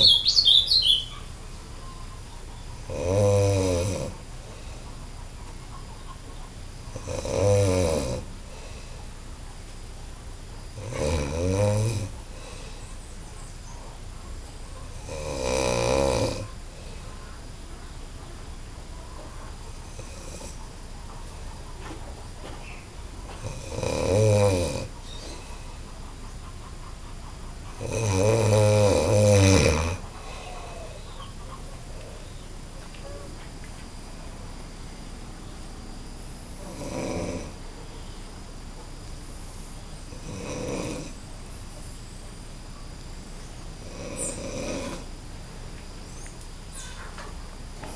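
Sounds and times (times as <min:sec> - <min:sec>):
person snoring loudly: 0:02.9 - 0:04.2, 0:06.9 - 0:08.8, 0:10.8 - 0:12.6, 0:15.0 - 0:16.6, 0:19.9 - 0:20.6, 0:23.4 - 0:24.9, 0:27.8 - 0:31.0, 0:36.6 - 0:37.6, 0:40.1 - 0:41.2, 0:43.8 - 0:45.1.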